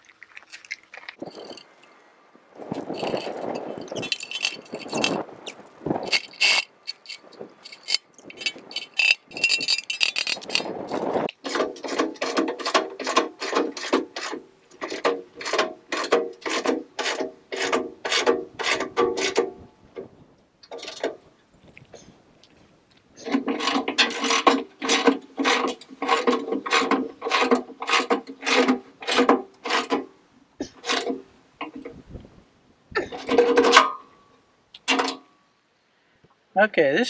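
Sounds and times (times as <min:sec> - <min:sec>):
metal clinking: 0:01.2 - 0:02.0, 0:02.6 - 0:11.3
ratchet wrench cranking: 0:02.7 - 0:11.3.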